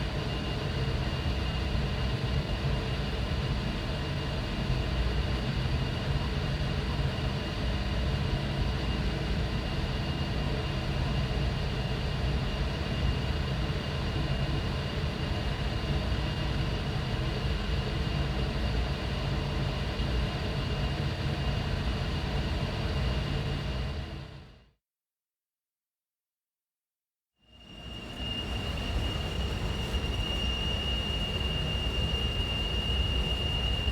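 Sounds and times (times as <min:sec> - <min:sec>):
thin high whine: 0:27.5 - 0:33.9
air rumbling through duct: 0:27.8 - 0:33.9.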